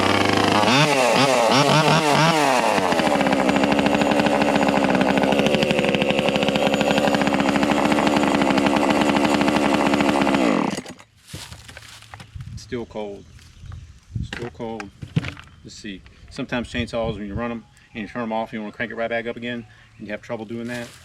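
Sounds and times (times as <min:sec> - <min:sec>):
chainsaw engine revving: 0:00.0 - 0:11.0.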